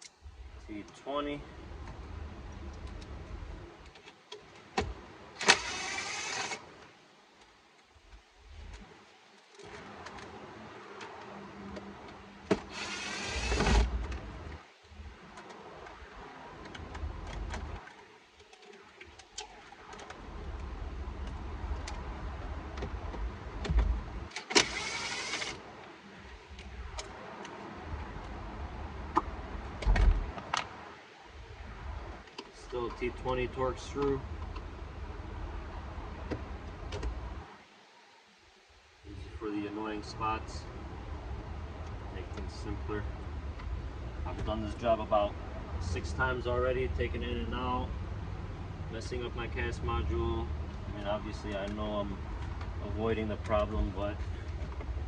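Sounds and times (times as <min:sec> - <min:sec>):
loud rasping whirr: 0:05.4 - 0:06.6, 0:12.5 - 0:14.0, 0:24.4 - 0:25.6
low handling rumble: 0:19.0 - 0:24.3.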